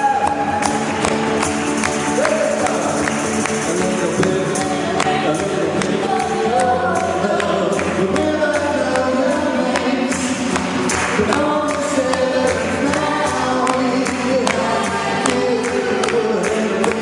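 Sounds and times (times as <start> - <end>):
steady percussive beat: 0.0 - 17.0
voices singing together: 3.7 - 17.0.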